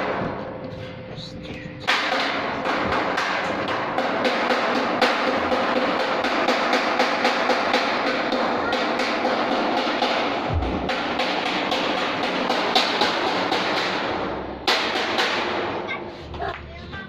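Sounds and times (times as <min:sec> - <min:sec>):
music with fast percussion beat: 0:01.9 - 0:15.5.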